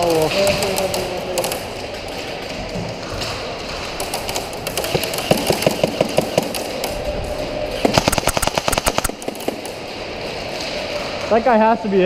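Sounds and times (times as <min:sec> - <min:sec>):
airsoft rifle full-auto bursts: 0:08.0 - 0:09.2.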